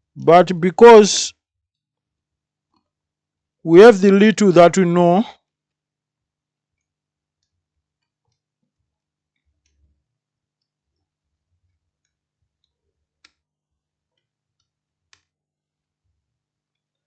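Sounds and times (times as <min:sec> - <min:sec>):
faint clicks and ticks: 0:01.5 - 0:03.2, 0:06.6 - 0:15.5, 0:16.1 - 0:17.0.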